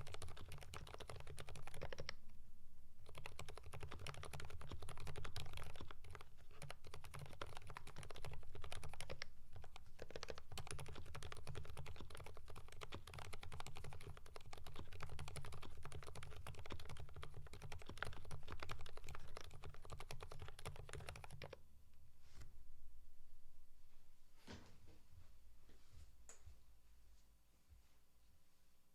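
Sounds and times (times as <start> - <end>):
mechanical keyboard typing: 0.0 - 2.2, 3.0 - 21.6.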